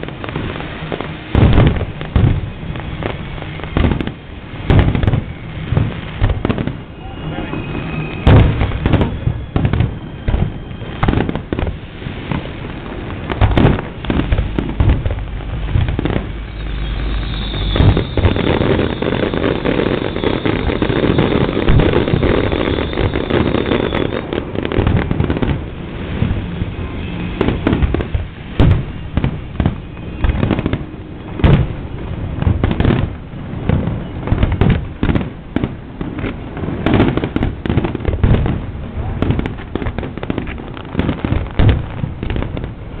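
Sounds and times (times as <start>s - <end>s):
fireworks bangs and booms: 0.0s - 43.0s
fireworks crackling: 0.0s - 43.0s
high whistle: 6.9s - 11.3s, 16.3s - 24.4s, 29.8s - 31.3s.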